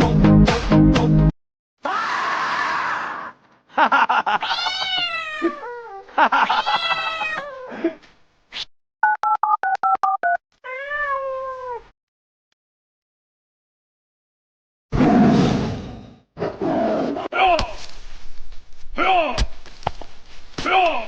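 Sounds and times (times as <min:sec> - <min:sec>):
cat meowing: 0:04.4 - 0:07.7, 0:10.6 - 0:11.8
telephone keypad beeps: 0:09.0 - 0:10.4.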